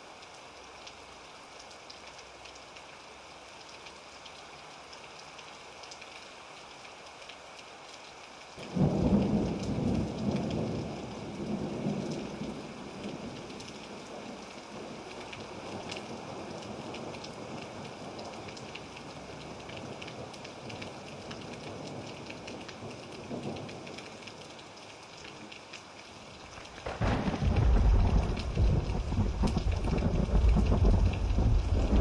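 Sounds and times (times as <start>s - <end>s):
steady rain falling: 0.0s - 32.0s
deep roll of thunder: 26.8s - 32.0s.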